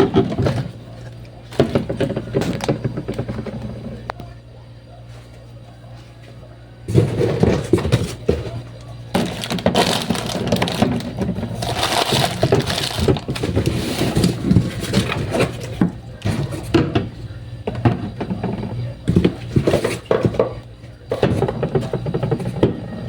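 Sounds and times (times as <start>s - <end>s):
plastic bags crinkling: 9.1s - 15.7s.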